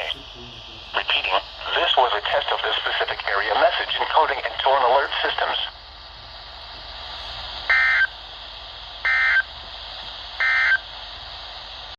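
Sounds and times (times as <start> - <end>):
radio hiss: 0.0 - 6.1.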